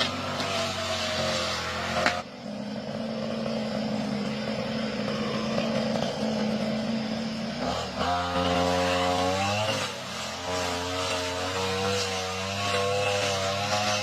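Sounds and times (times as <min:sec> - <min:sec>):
lawn mower engine running: 0:00.0 - 0:14.0.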